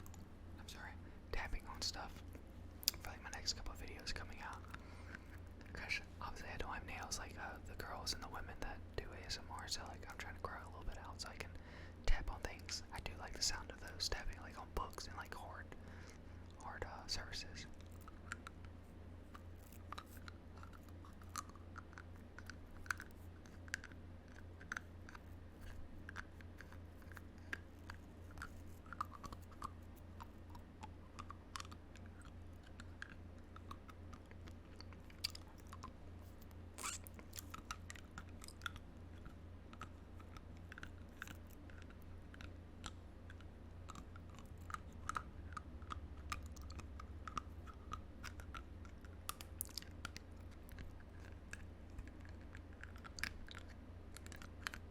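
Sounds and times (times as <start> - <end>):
teeth chewing hard plastic: 0.0 - 0.4, 1.7 - 5.8, 17.7 - 54.9
steady low hum: 0.0 - 54.9.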